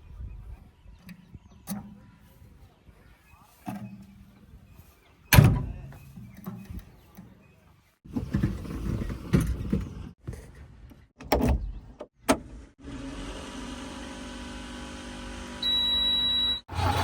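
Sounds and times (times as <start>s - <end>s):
diesel engine running: 16.7s - 17.0s.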